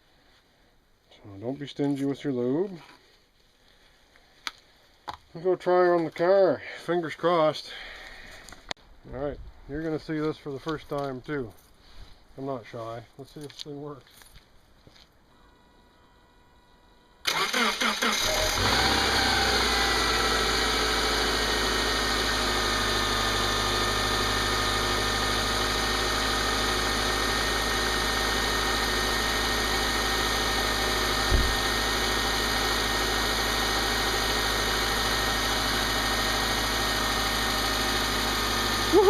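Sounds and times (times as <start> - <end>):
car engine idling: 17.3 - 39.0
brief thump: 31.3 - 31.6.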